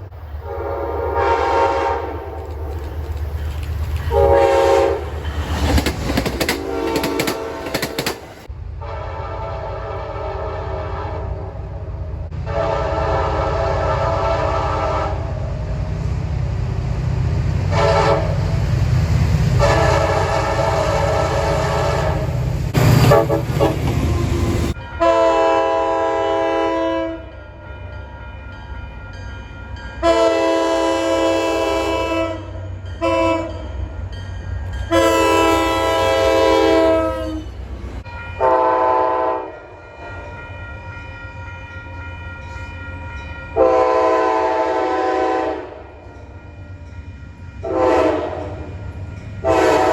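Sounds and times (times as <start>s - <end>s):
train rumbling past: 0.0s - 49.9s
locomotive air horn blasts: 0.4s - 2.4s, 4.1s - 5.2s, 6.6s - 7.9s, 8.8s - 11.6s, 12.3s - 15.5s, 17.7s - 18.6s, 19.6s - 27.3s, 30.0s - 33.6s, 34.9s - 37.6s, 38.4s - 40.3s, 43.6s - 46.0s, 47.6s - 48.8s, 49.4s - 49.9s.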